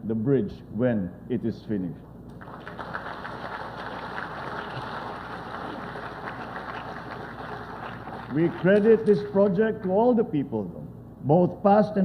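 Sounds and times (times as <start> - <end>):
audience applauding: 2.4 - 9.1.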